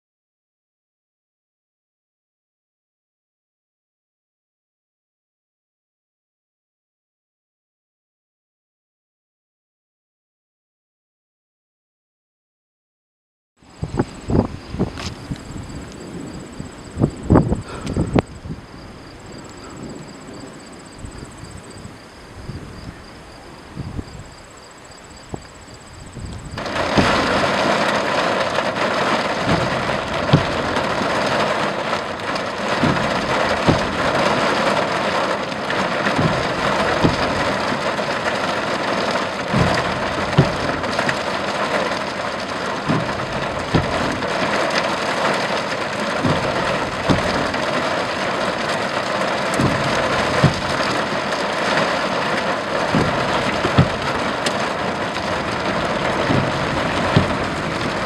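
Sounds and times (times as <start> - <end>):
heavy rain downpour: 13.6 - 58.0
sharp rain hits: 13.6 - 58.0.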